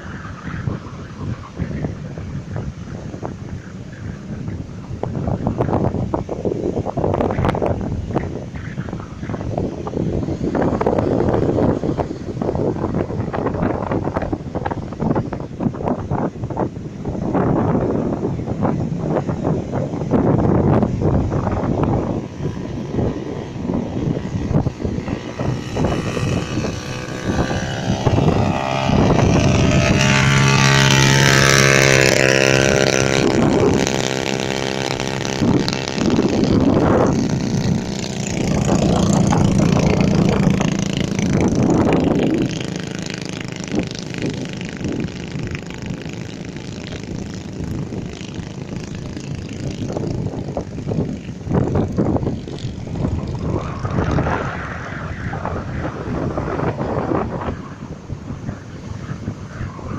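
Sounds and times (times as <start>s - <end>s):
strong wind on microphone: 0.0s - 59.9s
engine droning past: 17.3s - 59.9s.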